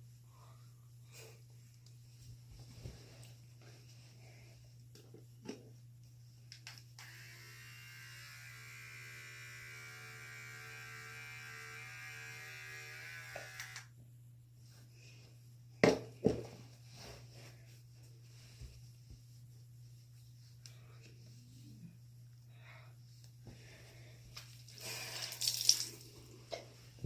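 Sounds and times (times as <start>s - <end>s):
handheld electric appliance buzzing: 6.6s - 13.9s.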